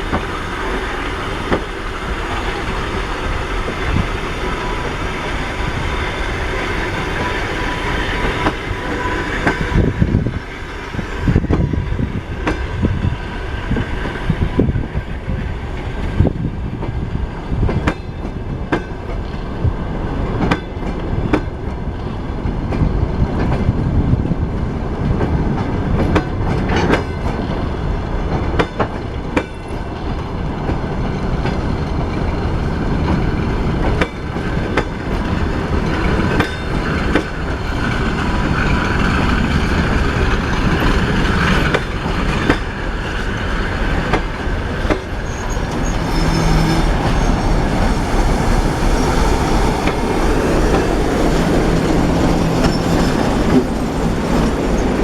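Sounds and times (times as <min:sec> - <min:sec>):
train wheels rumbling: 0:00.0 - 0:55.0
wheels clicking over rail joints: 0:25.1 - 0:55.0
wheel squeal: 0:36.0 - 0:55.0.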